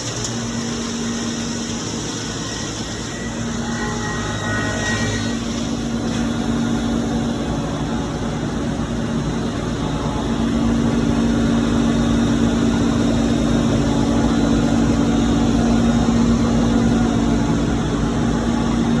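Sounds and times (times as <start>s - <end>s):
wood planer cutting: 2.3s - 7.2s.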